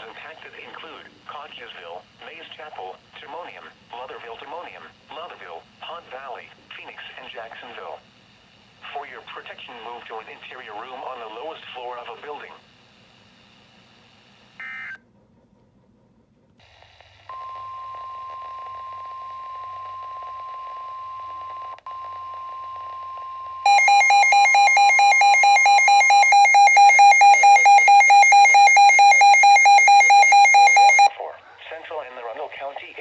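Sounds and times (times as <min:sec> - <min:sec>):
data chirp: 0:23.7 - 0:31.1
steady high alert tone: 0:23.7 - 0:31.1
warbling electronic alarm: 0:23.7 - 0:31.1.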